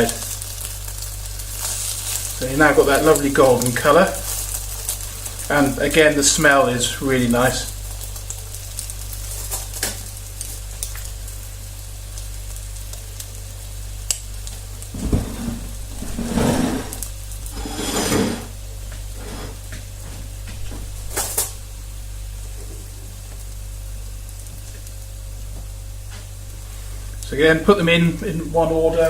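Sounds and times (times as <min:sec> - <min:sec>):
bread sizzling in oil: 0:00.0 - 0:29.0
utensil scraping against pan: 0:15.0 - 0:19.7.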